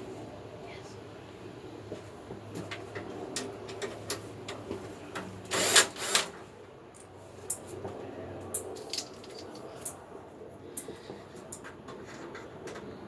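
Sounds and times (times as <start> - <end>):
power drill running: 5.5 - 6.4.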